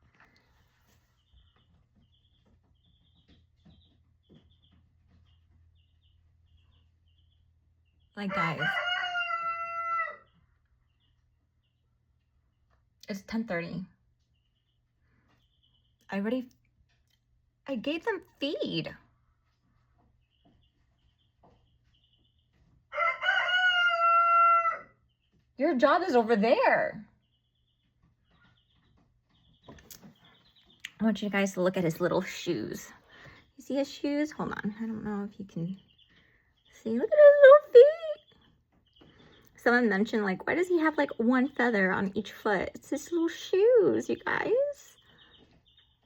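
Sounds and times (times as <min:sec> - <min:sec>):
small bird chirping: 0:00.0 - 0:46.0
rooster crowing: 0:08.3 - 0:10.3, 0:22.9 - 0:25.0.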